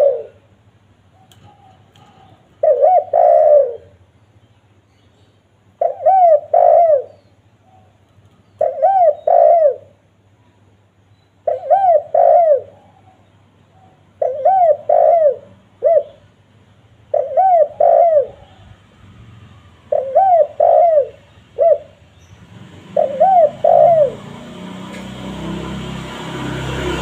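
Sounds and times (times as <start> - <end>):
dove cooing: 0.0 - 0.5, 1.2 - 4.0, 5.8 - 7.9, 8.6 - 10.0, 11.4 - 16.3, 17.1 - 18.8, 19.8 - 22.0, 22.8 - 24.6.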